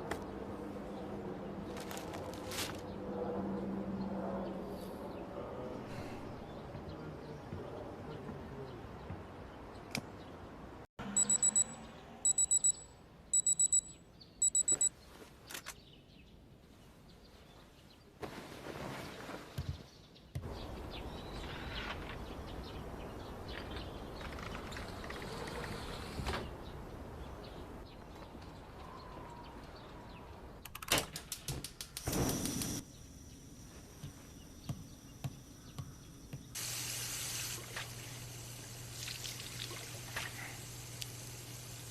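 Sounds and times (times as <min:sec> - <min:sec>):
electronic alarm beeping: 0:11.1 - 0:14.9.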